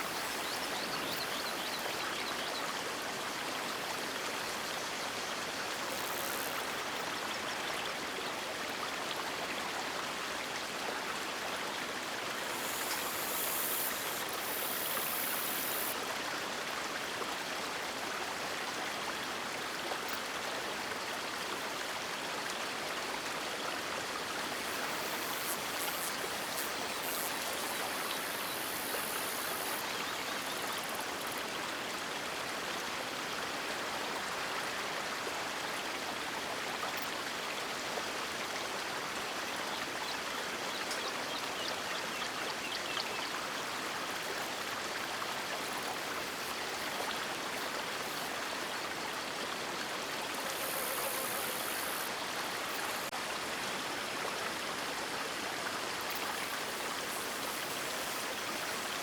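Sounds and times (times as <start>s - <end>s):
river water rushing: 43.4s - 54.8s.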